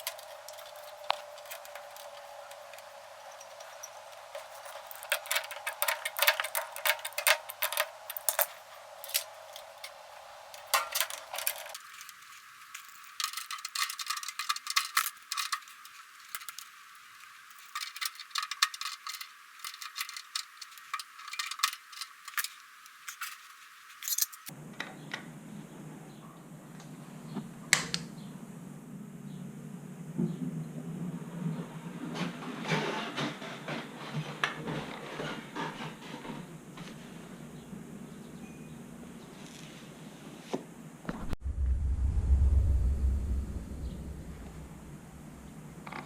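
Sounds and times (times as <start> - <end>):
metal tools clicking and rattling: 0.0 - 10.0, 10.6 - 16.7, 17.4 - 24.5.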